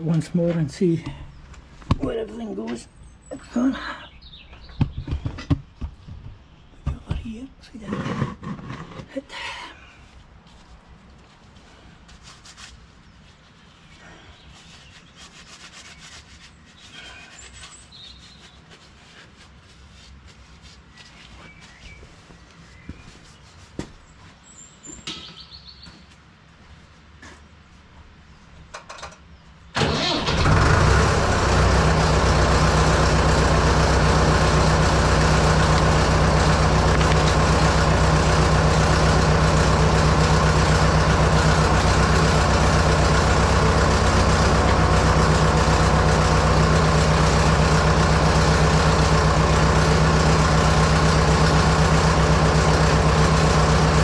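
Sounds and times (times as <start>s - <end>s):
tractor engine idling: 29.8s - 54.0s.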